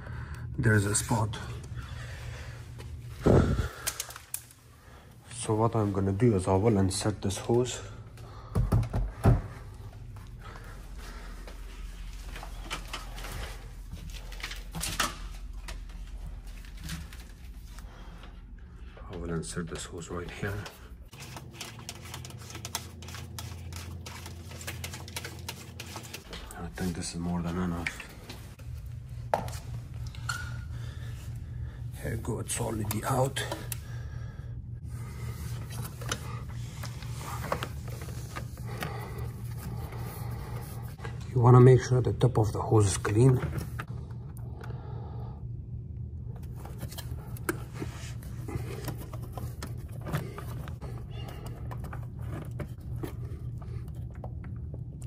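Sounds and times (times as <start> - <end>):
refrigerator hum: 0.0 - 55.0.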